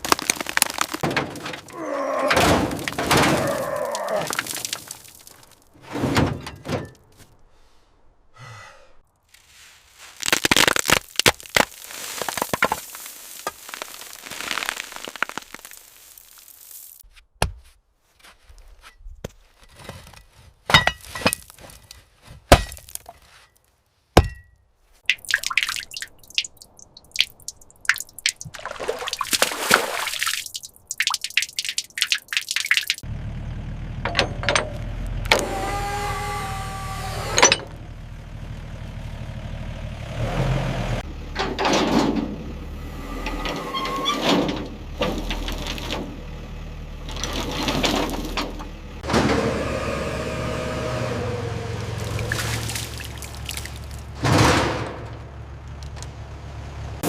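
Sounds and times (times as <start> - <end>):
pitched tool whine: 35.3 - 37.8.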